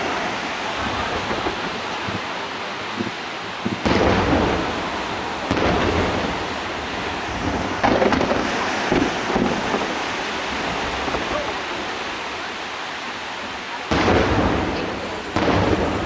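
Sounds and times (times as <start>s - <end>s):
heavy firework booms: 0.0s - 12.0s, 13.8s - 16.0s
firework rumble and crackle: 0.0s - 16.0s
firework shells bursting: 2.9s - 6.5s, 7.3s - 10.0s.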